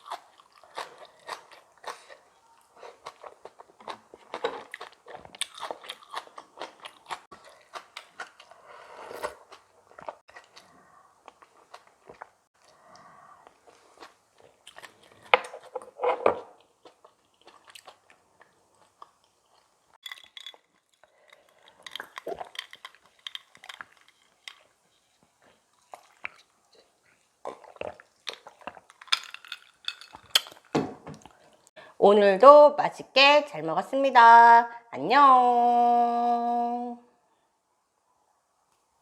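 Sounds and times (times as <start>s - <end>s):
wet chewing and crunching: 0.0s - 8.6s, 9.2s - 31.7s
crackly mouth sounds: 16.6s - 24.8s, 25.4s - 31.7s.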